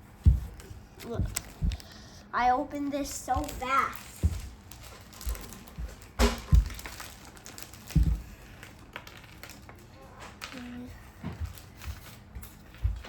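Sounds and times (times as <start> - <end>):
dull thumps: 0.1 - 1.9, 3.0 - 7.2, 7.8 - 8.4, 11.2 - 13.0.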